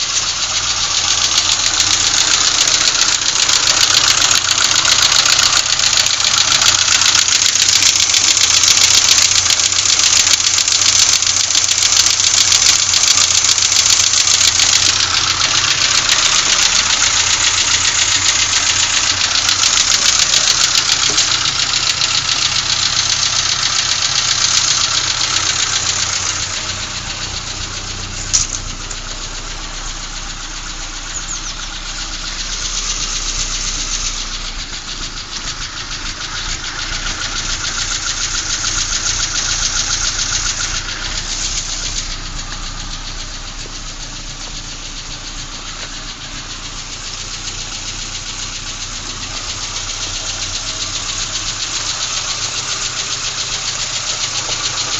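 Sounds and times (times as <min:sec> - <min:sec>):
car engine ticking: 0:00.0 - 0:54.9
sharp click: 0:28.2 - 0:29.0.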